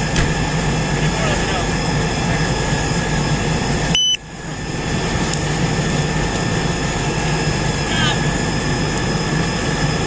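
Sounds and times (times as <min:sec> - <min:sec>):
engine idling: 0:00.0 - 0:10.0
short high electronic beep: 0:04.0 - 0:04.2.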